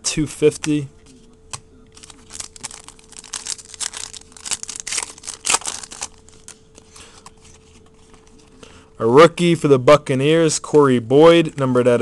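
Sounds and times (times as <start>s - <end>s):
cards being handled: 0.5s - 8.6s
card pack wrapper crinkling and tearing: 2.0s - 7.3s.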